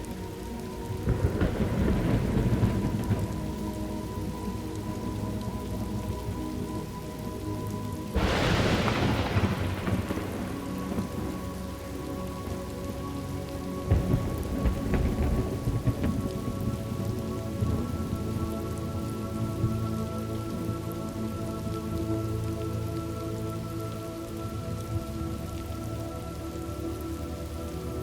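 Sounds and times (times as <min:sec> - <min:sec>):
crackling rumble of thunder: 0:00.0 - 0:28.0
steady rain: 0:00.0 - 0:28.0
loud thunderclap: 0:08.2 - 0:11.3, 0:13.9 - 0:16.6.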